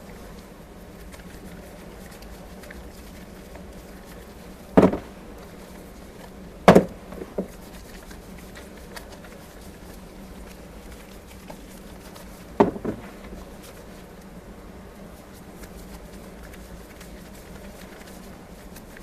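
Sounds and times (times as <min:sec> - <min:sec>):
soap bar handling sounds: 0:00.0 - 0:14.3.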